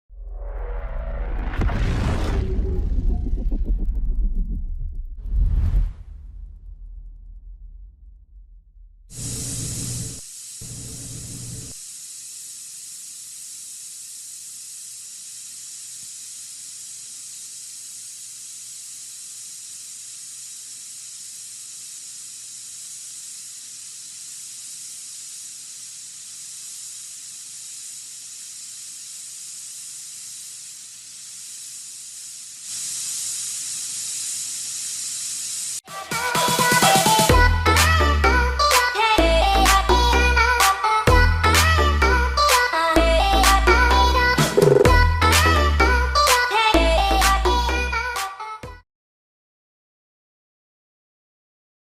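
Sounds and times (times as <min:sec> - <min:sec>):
gas hissing from cylinder: 0:09.1 - 0:48.3
music: 0:35.9 - 0:48.8.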